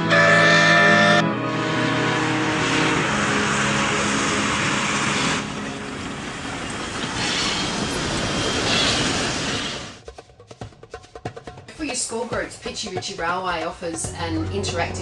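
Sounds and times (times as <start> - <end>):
train rushing along the line: 0.0 - 10.1.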